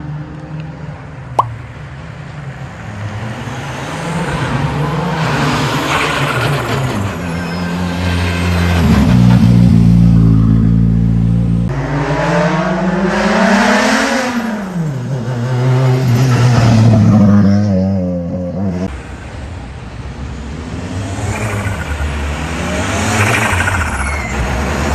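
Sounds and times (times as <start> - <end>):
rally car engine revving: 8.2 - 19.0, 20.5 - 24.9.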